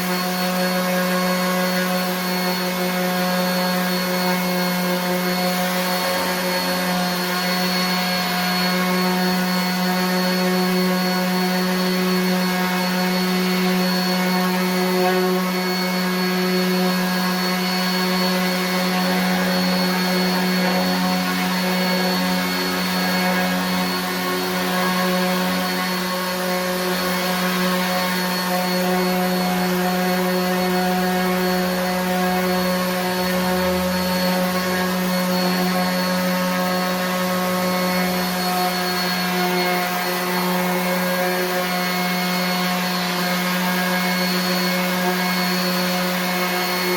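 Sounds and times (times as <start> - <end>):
orbit sander sanding wood: 0.0 - 46.9.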